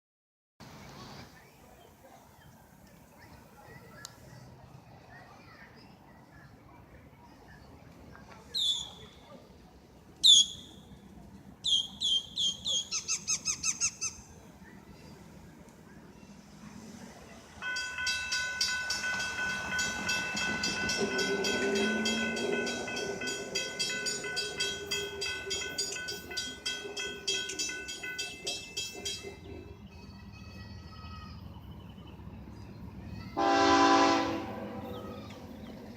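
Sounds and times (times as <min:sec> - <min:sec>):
freight train rumble: 0:00.6 - 0:35.9
bird call and chirps: 0:11.6 - 0:14.3
crossing warning bell ringing: 0:17.6 - 0:32.0, 0:33.4 - 0:35.4.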